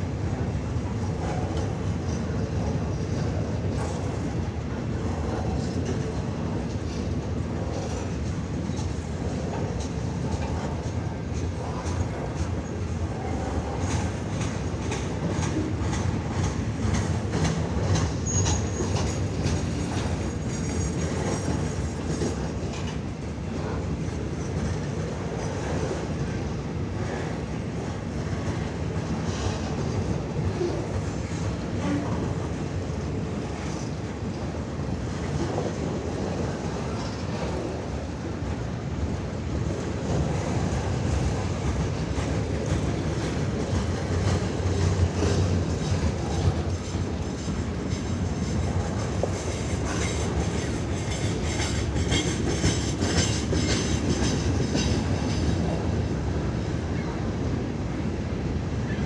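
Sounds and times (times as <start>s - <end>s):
freight train wheels clacking: 0.3s - 57.5s
high wheel squeal: 18.2s - 19.0s.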